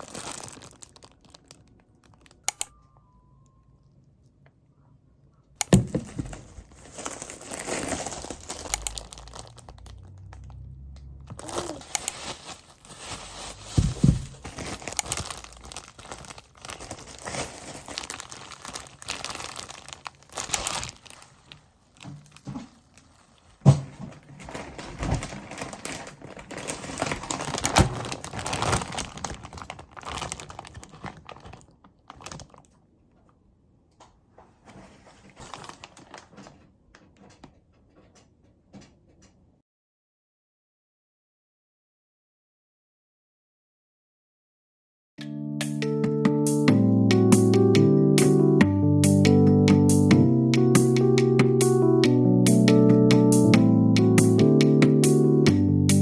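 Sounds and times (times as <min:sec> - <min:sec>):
packaging crinkling: 0:00.0 - 0:02.6, 0:05.7 - 0:10.7, 0:11.3 - 0:32.8, 0:34.7 - 0:36.6.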